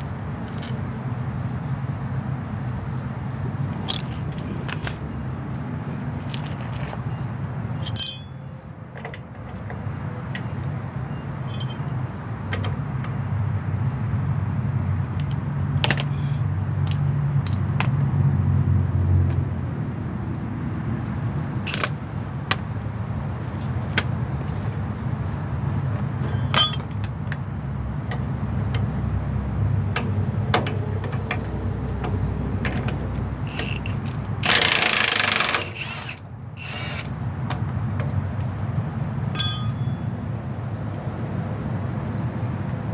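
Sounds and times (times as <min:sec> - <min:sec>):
hand tools clinking on metal: 0:07.8 - 0:08.6, 0:11.4 - 0:12.0, 0:16.7 - 0:17.7, 0:26.2 - 0:27.0, 0:39.4 - 0:40.2.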